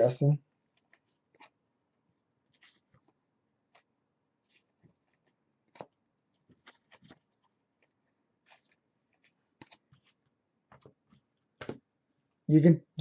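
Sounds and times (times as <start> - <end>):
trading cards tapping and rustling: 4.5 - 11.9.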